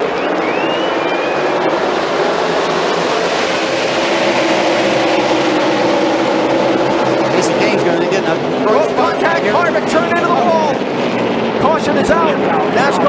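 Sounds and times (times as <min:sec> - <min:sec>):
racing car engines droning: 0:00.0 - 0:13.0.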